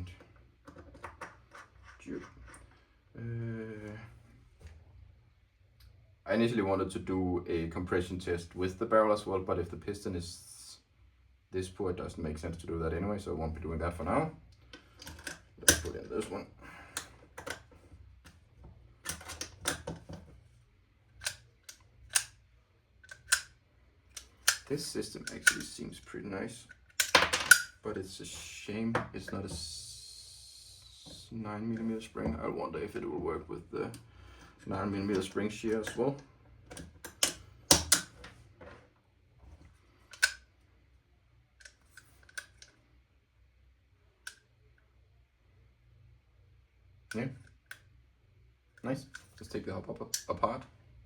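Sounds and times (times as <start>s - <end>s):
rifle parts clicking and tapping: 21.1s - 22.4s, 23.0s - 25.8s, 26.7s - 27.8s, 36.7s - 38.4s, 40.1s - 40.4s.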